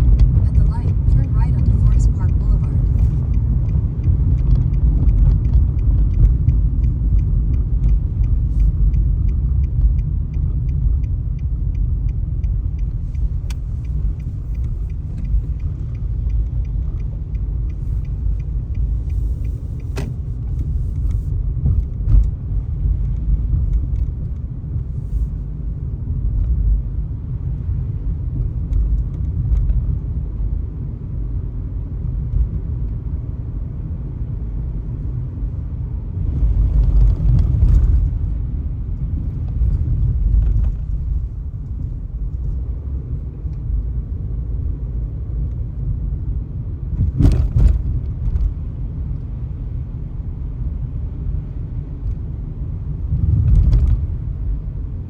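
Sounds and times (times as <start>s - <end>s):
car cabin road noise: 0.0s - 55.0s
faint ticks: 2.2s - 22.4s.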